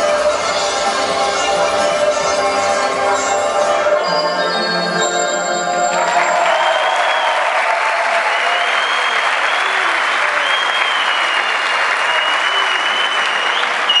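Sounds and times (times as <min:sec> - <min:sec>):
audience applauding: 0:05.4 - 0:14.0.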